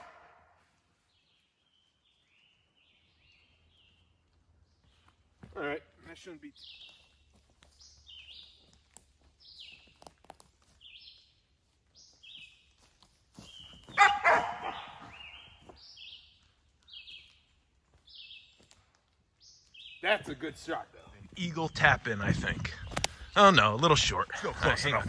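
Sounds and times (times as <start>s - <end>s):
dog barking: 13.9s - 15.2s.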